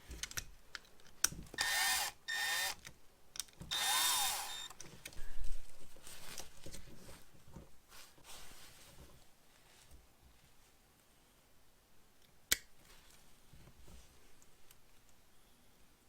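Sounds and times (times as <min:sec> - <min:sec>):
power drill whining: 0:01.6 - 0:02.8, 0:03.7 - 0:04.7
light clicks and handling noises: 0:04.7 - 0:11.1, 0:12.2 - 0:15.3.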